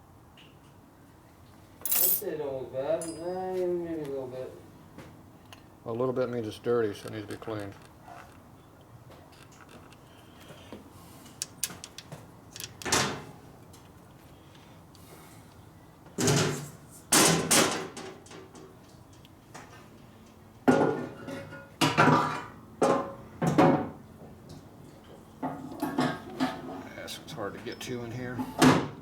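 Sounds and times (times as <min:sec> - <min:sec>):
metal tools clanking: 0:01.8 - 0:02.3.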